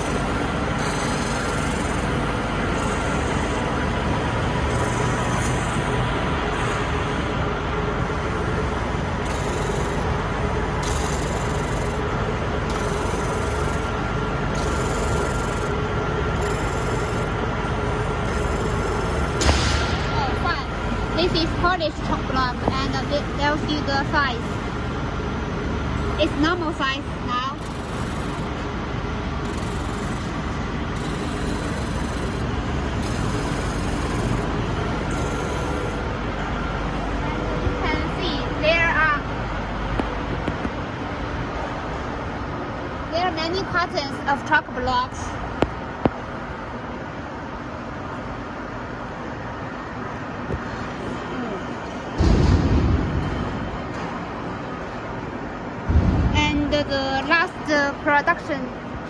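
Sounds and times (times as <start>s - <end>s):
machinery mechanical din: 0.0s - 24.9s, 25.9s - 38.8s, 51.8s - 58.6s
faint steady hum tones: 0.0s - 59.0s.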